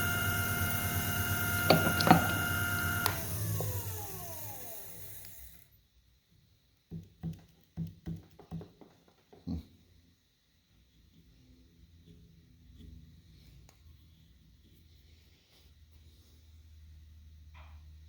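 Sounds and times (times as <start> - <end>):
motor winding down: 0.0 - 5.7
power tool switch click: 0.6 - 4.2.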